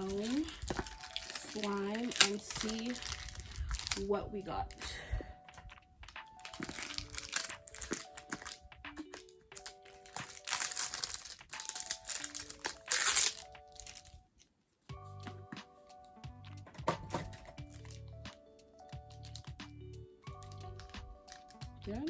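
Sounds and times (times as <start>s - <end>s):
plastic packaging crinkling: 0.0s - 4.9s, 5.6s - 14.5s, 17.2s - 18.2s, 19.0s - 19.6s, 20.3s - 21.7s
soft background music: 0.0s - 22.0s.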